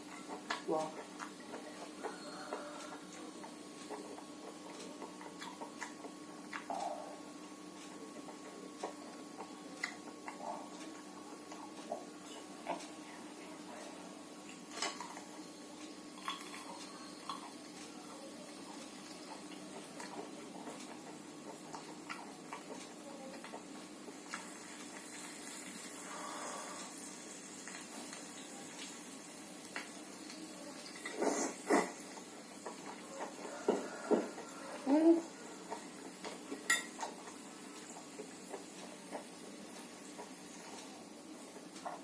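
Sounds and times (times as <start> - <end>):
faint steady hum: 0.0 - 42.0
chopsticks clinking against dishes: 36.7 - 37.1.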